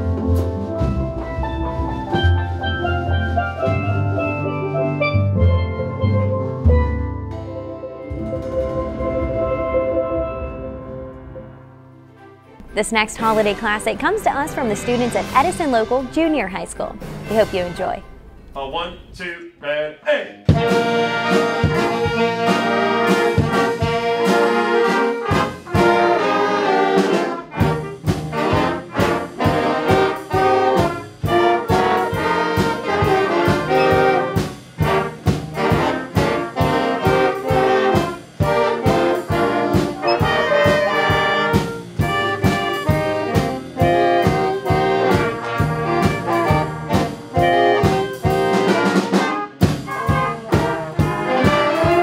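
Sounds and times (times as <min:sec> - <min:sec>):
school band playing: 0:00.0 - 0:19.3, 0:20.4 - 0:52.0
trumpets and trombones: 0:07.8 - 0:19.3, 0:20.5 - 0:52.0
steady drum beat: 0:12.8 - 0:18.3, 0:20.5 - 0:52.0.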